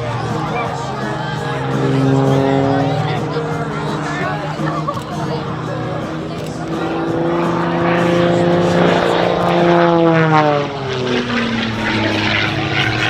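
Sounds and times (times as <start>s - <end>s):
propeller plane passing by: 0.0s - 13.0s.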